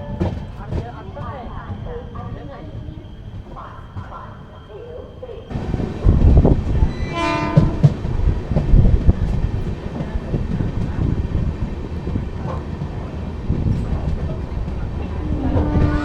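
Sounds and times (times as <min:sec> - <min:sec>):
train rumbling past: 0:00.0 - 0:16.0
train wheels clanking: 0:00.0 - 0:16.0
train horn note: 0:06.9 - 0:08.0, 0:15.2 - 0:16.0.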